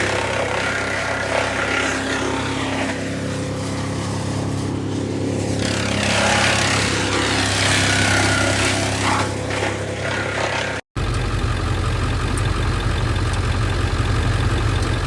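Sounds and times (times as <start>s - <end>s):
equipment engine running: 0.0s - 15.0s.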